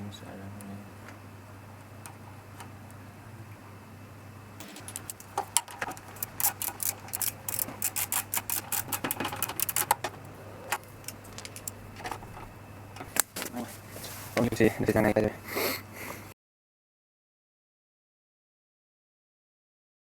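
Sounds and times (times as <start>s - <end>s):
low hum: 3.6s - 13.2s
metal tools clicking: 4.6s - 11.8s.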